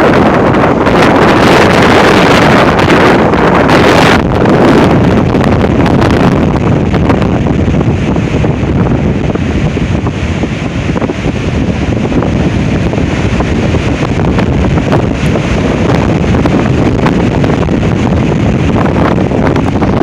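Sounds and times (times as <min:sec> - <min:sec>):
gusty wind on microphone: 0:00.0 - 0:20.0.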